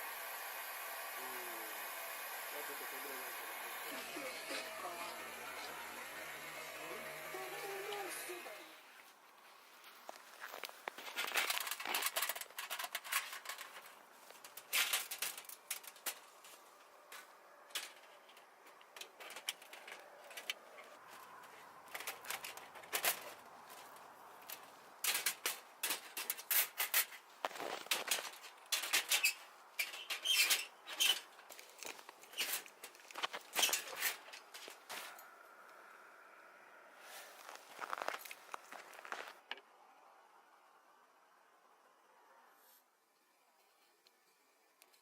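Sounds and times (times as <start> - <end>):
rustling: 7.6 - 35.2, 37.0 - 39.4
sharp clicks and crunches: 9.8 - 35.2, 37.4 - 39.6.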